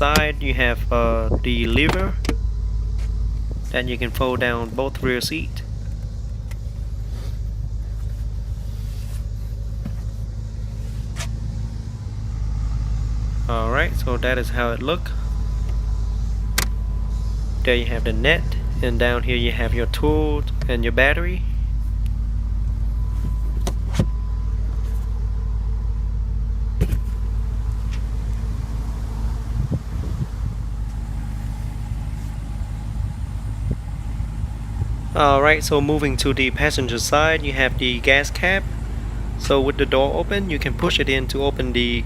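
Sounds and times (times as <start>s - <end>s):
seatback folding clunk: 0.0s - 0.4s, 1.3s - 2.4s, 5.8s - 11.4s, 23.1s - 24.2s, 26.8s - 27.2s
faint constant hum: 0.0s - 42.0s
steady low rumble: 0.0s - 42.0s.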